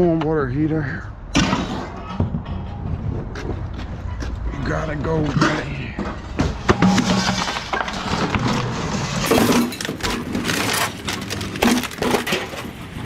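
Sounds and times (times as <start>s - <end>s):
metal tank scraping and clanking: 5.0s - 13.0s
metal crashing and rattling: 5.4s - 13.0s.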